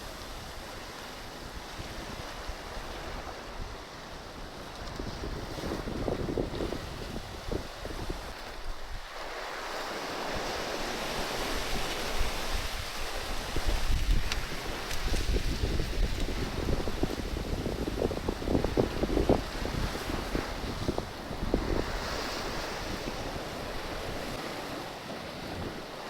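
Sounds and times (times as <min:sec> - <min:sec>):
sea waves washing: 0:00.0 - 0:26.0
wind rumbling on microphone: 0:00.0 - 0:26.0.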